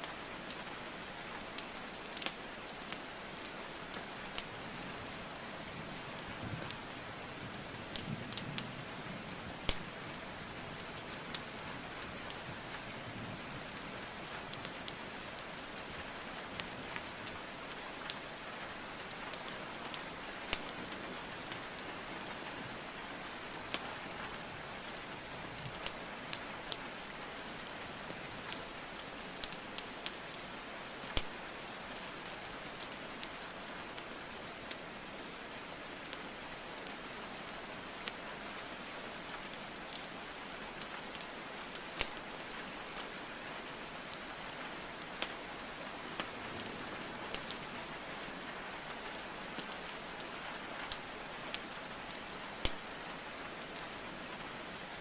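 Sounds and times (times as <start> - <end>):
rain hiss: 0.0 - 55.0
logs popping and crackling in fire: 1.5 - 4.5, 7.6 - 8.4, 9.4 - 18.3, 19.0 - 22.4, 24.9 - 31.5, 40.8 - 42.3, 46.1 - 47.7, 48.8 - 54.0.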